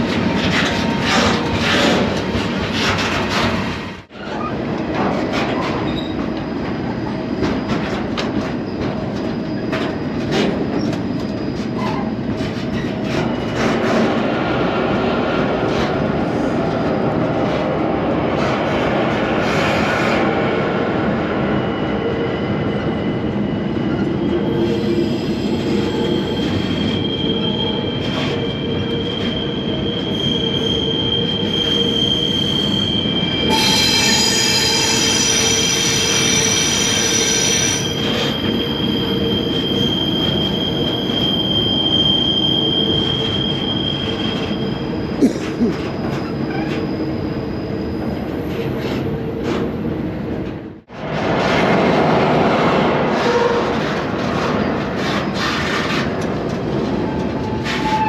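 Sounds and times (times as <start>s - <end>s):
train car rattling and clanking: 0.0s - 21.3s, 22.1s - 58.0s
freight train rumbling: 0.0s - 58.0s
high wheel squeal: 5.5s - 14.1s, 21.4s - 49.0s, 56.9s - 58.0s.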